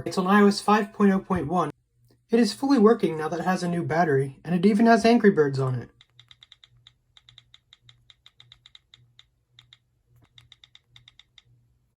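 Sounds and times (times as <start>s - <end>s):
phone keyboard clicks: 5.9s - 11.6s.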